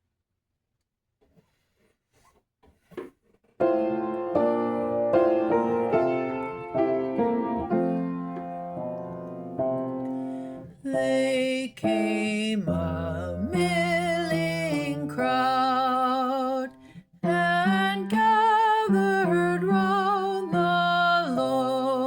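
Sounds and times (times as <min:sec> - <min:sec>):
piano playing hymn chords: 0:03.6 - 0:16.1.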